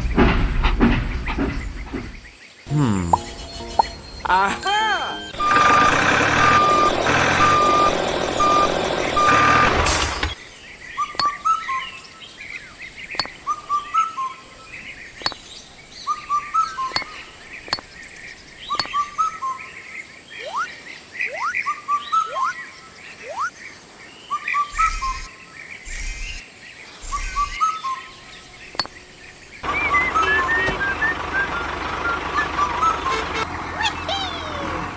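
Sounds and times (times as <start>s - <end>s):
birds chirping: 1.1s - 34.9s
vehicle reversing beeps: 2.8s - 10.4s, 24.7s - 25.3s, 27.0s - 27.6s, 29.6s - 33.4s.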